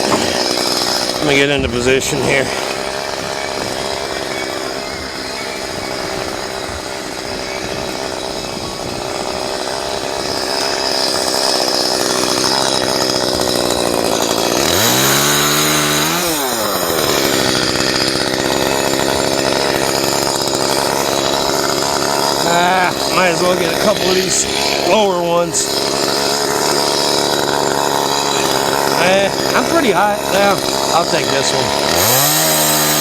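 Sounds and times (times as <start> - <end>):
chainsaw cutting branches: 0.0 - 33.0.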